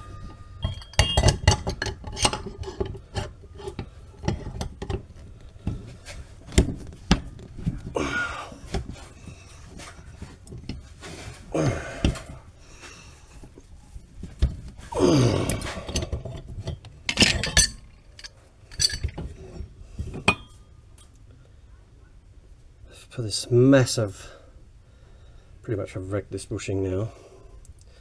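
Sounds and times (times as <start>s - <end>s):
metal scraping: 0.0s - 5.3s, 17.1s - 19.3s
metal clinks and knocks: 0.0s - 5.9s, 15.6s - 20.6s.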